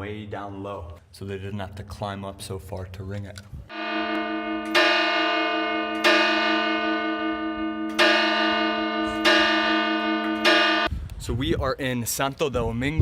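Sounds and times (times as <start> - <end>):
tower bell ringing: 3.7 - 10.9.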